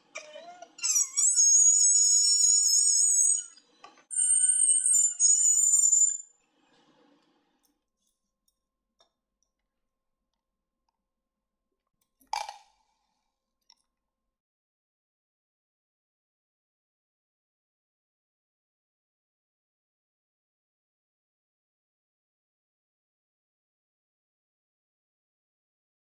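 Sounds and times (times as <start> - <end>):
rotary tool whining: 0.9 - 6.2.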